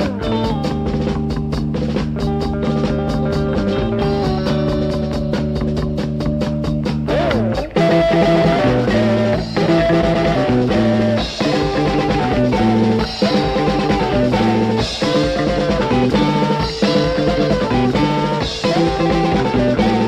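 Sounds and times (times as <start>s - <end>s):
instrumental psychedelic rock: 0.0s - 20.0s
electric guitar sliding note: 7.1s - 20.0s.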